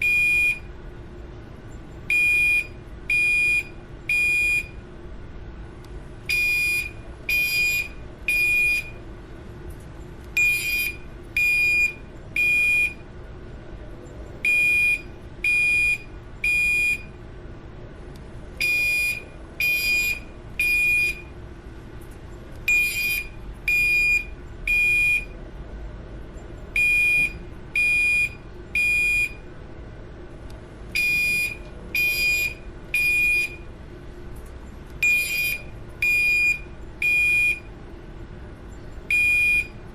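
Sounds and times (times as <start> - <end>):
fire alarm tones: 0.0 - 0.7, 2.1 - 4.8, 6.3 - 9.0, 10.4 - 13.0, 14.4 - 17.2, 18.6 - 21.3, 22.7 - 25.4, 26.8 - 29.4, 30.9 - 33.7, 35.0 - 37.7, 39.1 - 39.8
steady low hum: 0.0 - 39.9.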